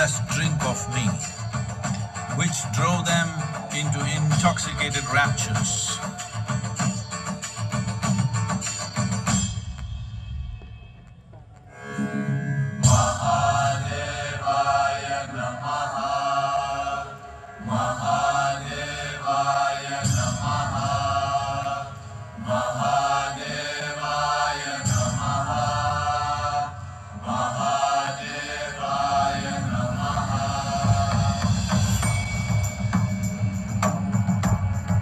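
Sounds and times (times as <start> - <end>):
voices chanting: 0.0 - 9.1, 12.8 - 35.0.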